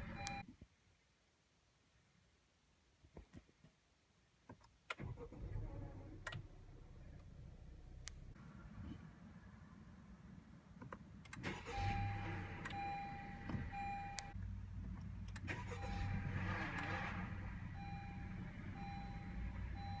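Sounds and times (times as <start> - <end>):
car engine cranking and idling: 0.0 - 0.4, 4.9 - 20.0
dashboard chime beeping: 11.8 - 14.4, 17.8 - 20.0.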